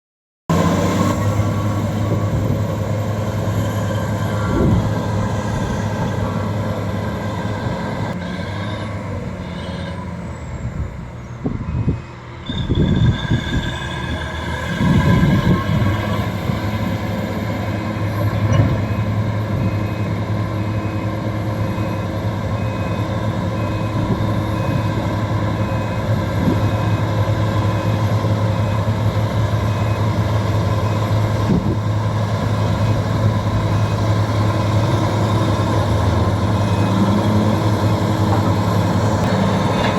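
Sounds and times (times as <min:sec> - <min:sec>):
bulldozer diesel engine running: 0:00.5 - 0:39.9.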